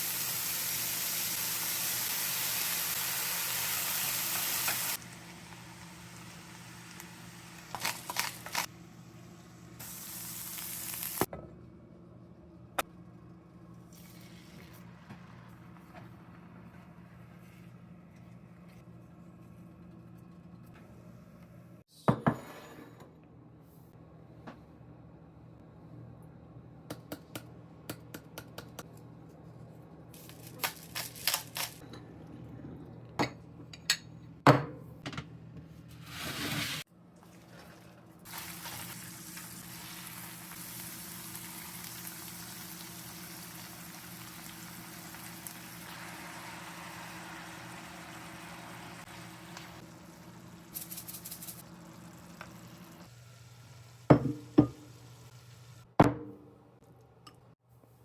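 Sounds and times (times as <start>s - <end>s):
food frying in a pan: 0.0s - 11.3s, 38.2s - 55.9s.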